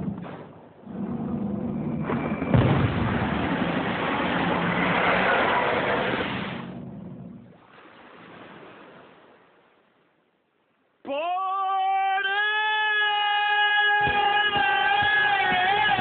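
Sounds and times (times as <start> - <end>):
loud rushing noise: 1.8 - 6.8.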